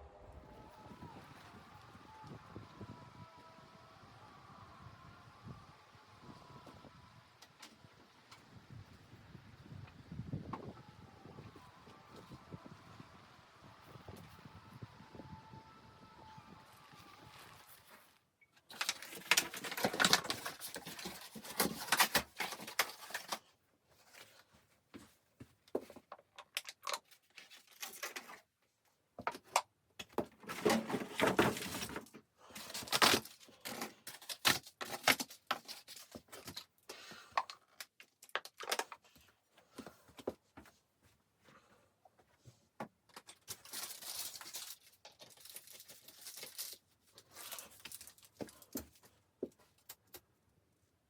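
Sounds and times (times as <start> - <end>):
objects rustling and knocking: 17.3 - 26.3, 29.2 - 50.2.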